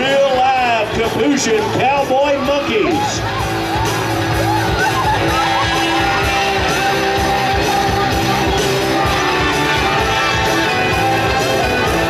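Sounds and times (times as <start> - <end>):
loud music with steady beat: 0.0 - 12.0.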